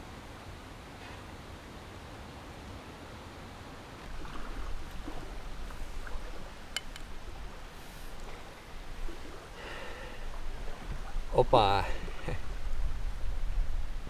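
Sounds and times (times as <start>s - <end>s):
wind gusting on microphone: 4.0s - 14.0s.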